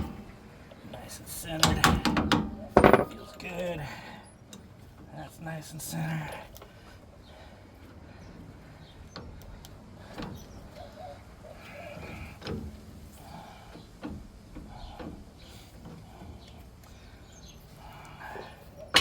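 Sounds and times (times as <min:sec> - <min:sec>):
metal clicks and knocks: 0:01.6 - 0:03.4.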